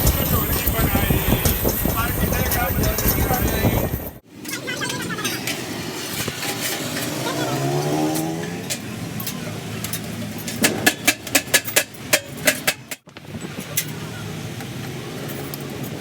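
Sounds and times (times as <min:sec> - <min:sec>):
engine revving: 0:05.1 - 0:09.8
sharp metallic knocks: 0:10.4 - 0:13.1.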